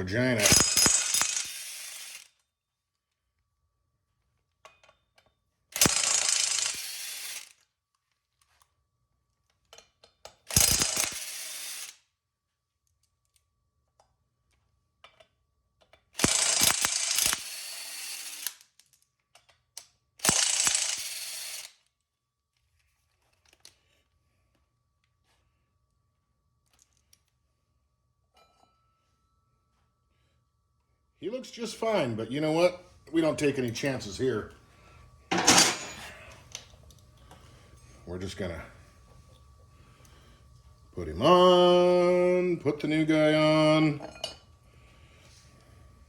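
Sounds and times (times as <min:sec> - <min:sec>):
impact wrench hammering: 0:00.4 - 0:02.2, 0:05.8 - 0:07.4, 0:10.5 - 0:11.6, 0:35.3 - 0:36.1.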